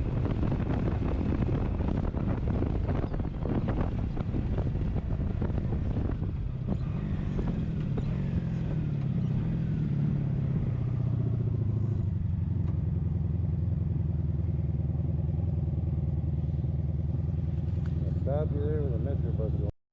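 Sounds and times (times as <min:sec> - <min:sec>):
wind buffeting microphone: 0:00.0 - 0:12.3
motorcycle engine running: 0:00.0 - 0:19.7.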